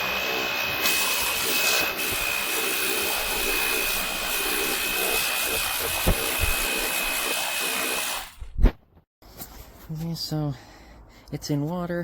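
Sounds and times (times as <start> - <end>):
pressure washer pump whining: 0.0 - 8.4.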